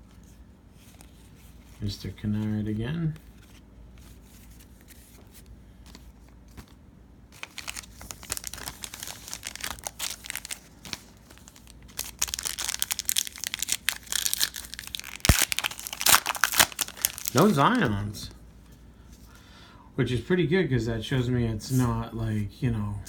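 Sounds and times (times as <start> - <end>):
plastic wrapper crinkling: 7.3 - 18.3.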